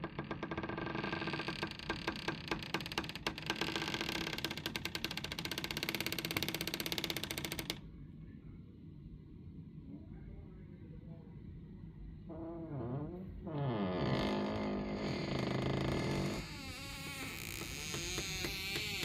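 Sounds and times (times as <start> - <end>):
door creaking: 0.0 - 7.8, 12.3 - 19.0.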